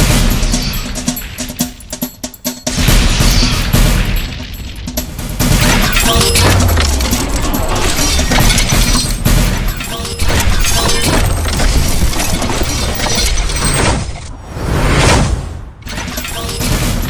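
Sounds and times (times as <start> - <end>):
music: 0.0 - 13.8.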